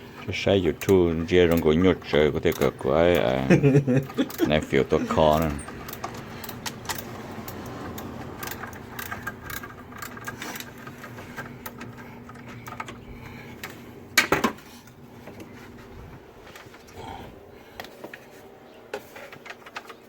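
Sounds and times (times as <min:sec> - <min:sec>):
hand tools clinking on metal: 0:00.6 - 0:13.0.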